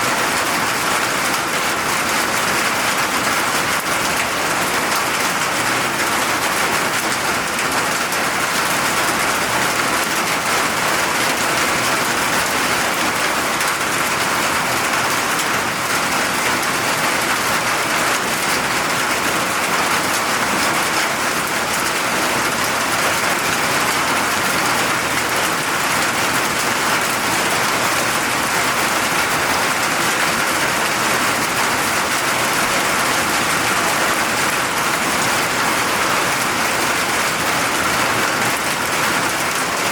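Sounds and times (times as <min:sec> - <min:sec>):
rain falling: 0:00.0 - 0:39.9.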